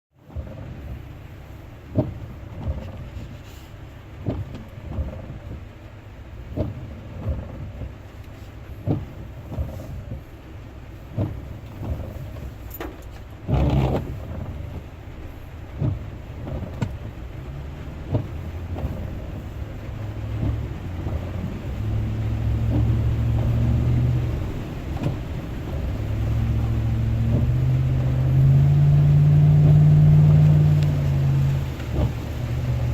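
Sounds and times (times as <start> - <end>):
low vehicle rumble: 0.2 - 32.9.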